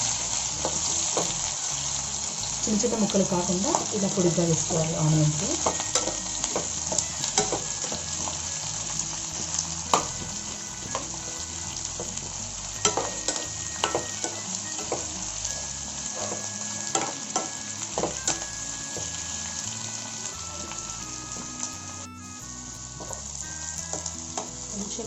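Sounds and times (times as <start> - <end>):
food sizzling in hot oil: 0.0 - 25.0
spatula clicking against pan: 5.6 - 8.0, 12.8 - 15.1.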